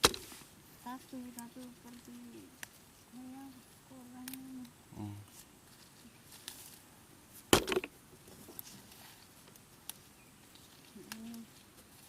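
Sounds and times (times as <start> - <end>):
plant rustle and knock: 0.0 - 0.5, 5.7 - 9.3
faint clicks and snaps: 1.3 - 2.8, 4.2 - 4.8, 9.5 - 11.6.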